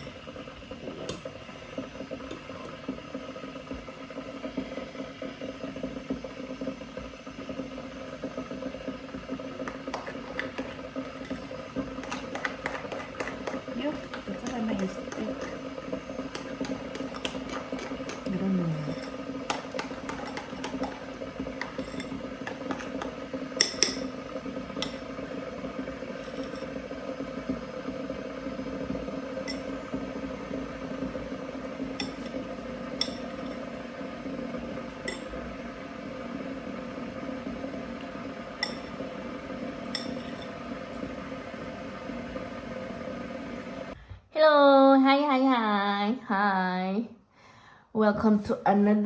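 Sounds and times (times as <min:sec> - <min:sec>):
steady low hum: 0:09.5 - 0:44.0.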